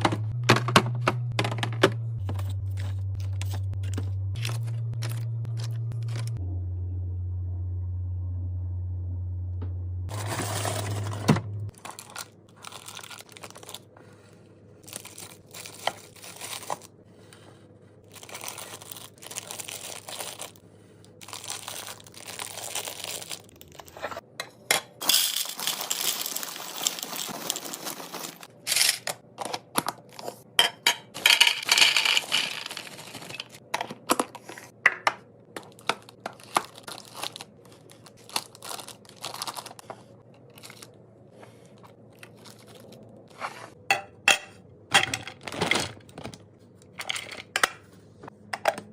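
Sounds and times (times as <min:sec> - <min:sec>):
low steady hum: 0:00.0 - 0:48.9
plastic packaging crinkling: 0:11.7 - 0:13.9, 0:14.8 - 0:16.9, 0:18.0 - 0:20.6, 0:21.2 - 0:24.0, 0:25.0 - 0:28.7, 0:31.4 - 0:33.7, 0:35.6 - 0:40.9, 0:41.7 - 0:43.1.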